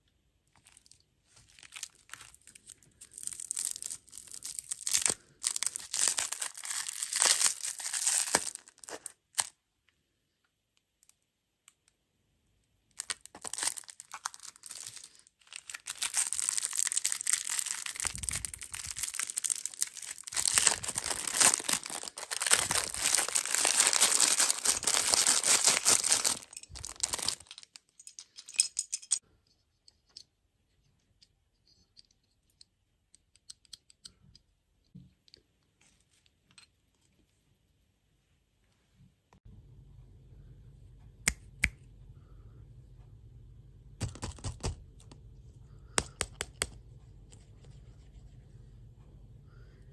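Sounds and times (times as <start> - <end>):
plastic packaging crinkling: 0.6 - 9.5, 13.0 - 28.2.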